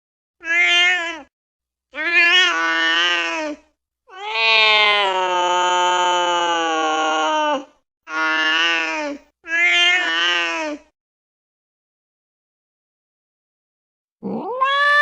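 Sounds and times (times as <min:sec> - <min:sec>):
angry cat yowling: 0:02.0 - 0:08.9, 0:14.3 - 0:15.0.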